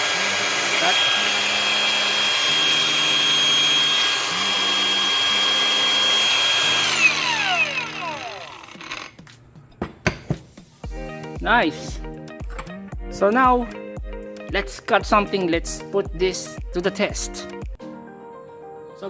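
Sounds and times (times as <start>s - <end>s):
angle grinder whining: 0.0s - 10.2s.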